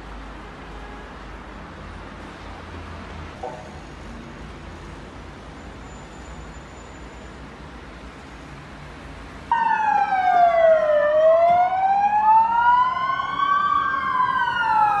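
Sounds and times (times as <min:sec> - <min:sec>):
low traffic rumble: 0:00.0 - 0:15.0
emergency siren wailing: 0:09.5 - 0:15.0.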